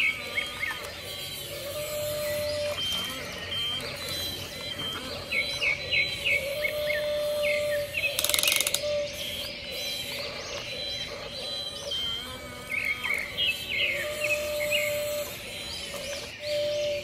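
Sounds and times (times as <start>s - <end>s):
small birds chirping: 0.0s - 17.0s
fast ratcheting rattle: 8.2s - 8.8s.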